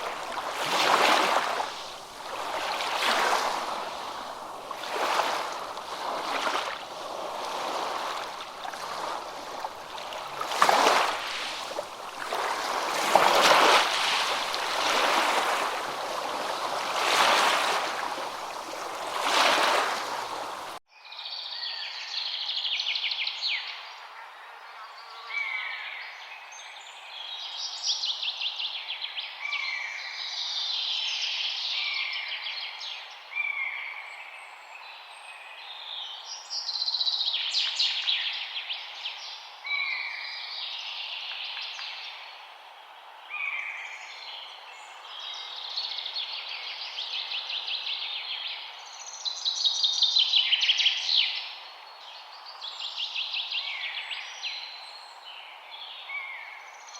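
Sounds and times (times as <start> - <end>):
birds chirping: 0.0 - 20.8
rushing water: 0.0 - 20.8.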